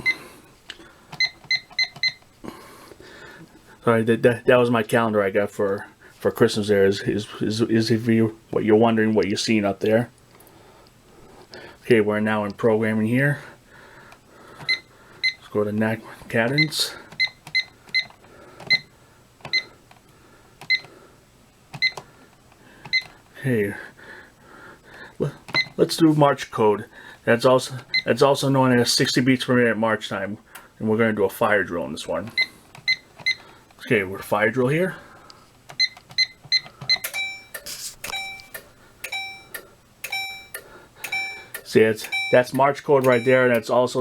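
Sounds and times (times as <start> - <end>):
keypad beeping: 1.2 - 2.3, 16.6 - 18.9, 19.5 - 19.7, 20.6 - 20.9, 21.8 - 22.0, 22.9 - 23.2, 25.5 - 25.8, 32.3 - 33.4, 35.7 - 43.7
fire alarm horns: 37.0 - 43.6.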